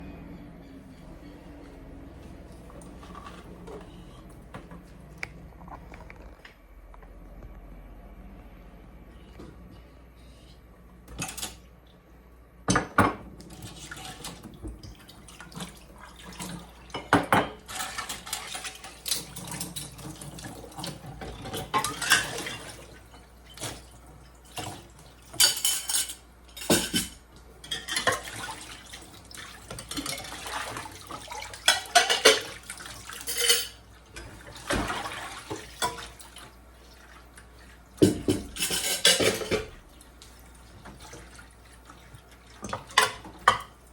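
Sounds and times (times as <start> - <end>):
dishes and cutlery clattering: 11.1 - 11.6, 16.9 - 23.8, 24.5 - 28.8, 29.4 - 36.3, 38.0 - 39.8, 42.6 - 43.8
running water: 27.6 - 43.9.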